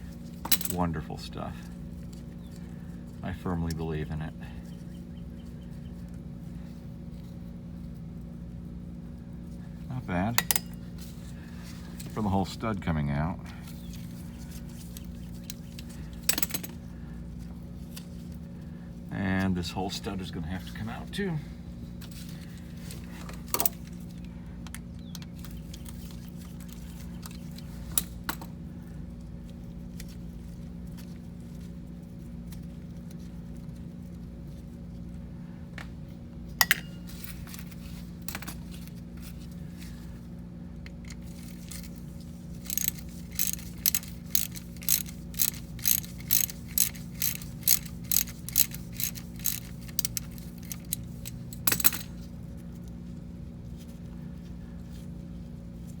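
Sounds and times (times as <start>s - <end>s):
steady low hum: 0.0s - 56.0s
ratchet wrench clicking: 41.4s - 42.0s, 42.6s - 52.1s
metal clicks: 42.6s - 52.1s.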